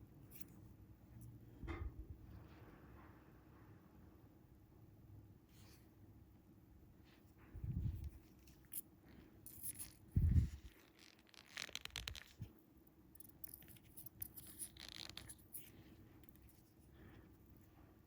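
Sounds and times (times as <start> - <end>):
fishing line rustles and scrapes: 5.5 - 6.0, 7.0 - 12.6, 13.2 - 17.8.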